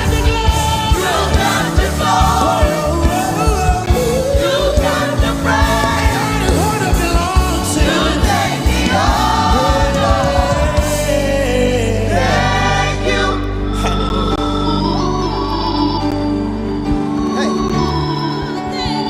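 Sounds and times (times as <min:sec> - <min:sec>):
band with bass and drums: 0:00.0 - 0:13.0
gospel singers: 0:00.0 - 0:19.0.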